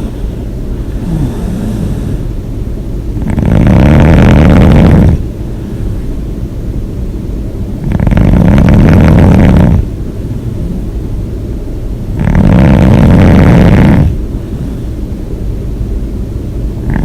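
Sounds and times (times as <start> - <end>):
person snoring loudly: 1.0 - 2.2, 3.2 - 5.2, 7.8 - 9.9, 12.2 - 14.2.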